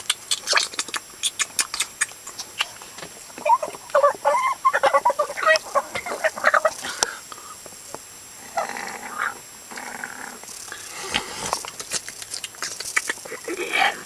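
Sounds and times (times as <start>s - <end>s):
scattered clicks: 0.0s - 2.7s
growling vocal sounds: 8.4s - 11.6s.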